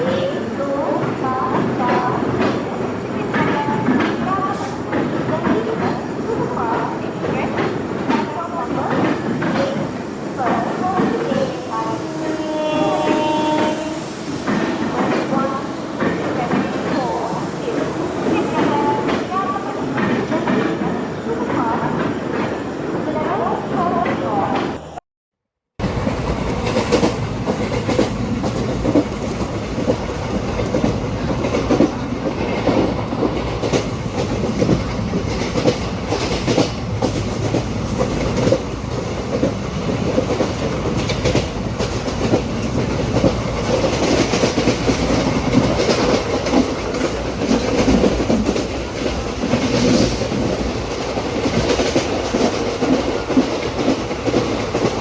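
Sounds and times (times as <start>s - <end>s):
train rumbling on track: 0.0s - 25.0s, 25.8s - 55.0s.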